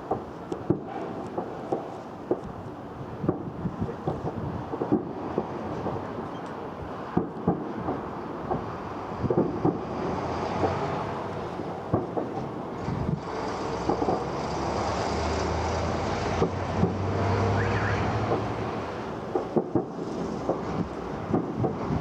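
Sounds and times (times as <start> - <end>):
fireworks pops and bangs: 0.0 - 15.0, 16.2 - 17.0, 17.6 - 22.0.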